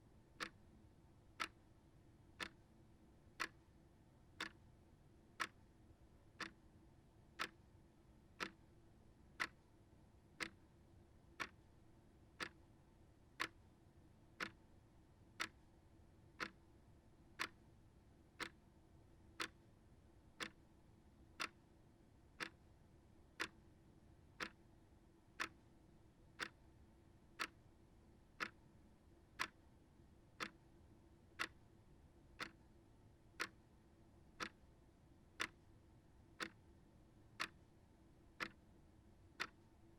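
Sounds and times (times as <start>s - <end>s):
shelf clock ticking: 3.4s - 3.6s, 4.4s - 4.6s, 8.4s - 8.6s, 11.4s - 11.6s, 13.4s - 13.6s, 14.4s - 14.6s, 15.4s - 15.6s, 16.4s - 16.6s, 17.4s - 17.6s, 22.4s - 22.6s, 25.4s - 25.6s, 26.4s - 26.6s, 28.4s - 28.6s, 29.4s - 29.6s, 30.4s - 30.6s, 32.4s - 32.6s, 33.4s - 33.6s, 36.4s - 36.6s, 39.4s - 39.6s.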